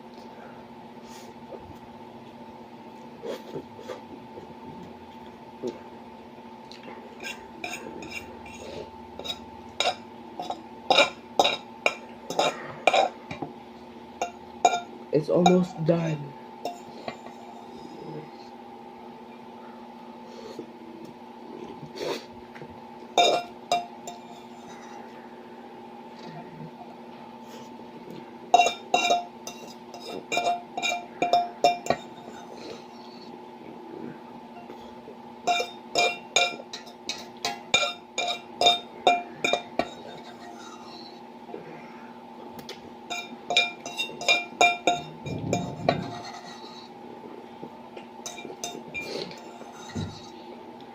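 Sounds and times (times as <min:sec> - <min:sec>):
electrical hum: 0:00.0 - 0:50.9
utensil clinking against plate: 0:07.2 - 0:08.6, 0:09.2 - 0:13.4, 0:14.2 - 0:15.8, 0:23.2 - 0:24.8, 0:28.5 - 0:32.8, 0:35.5 - 0:41.1, 0:43.1 - 0:46.9, 0:48.2 - 0:50.4.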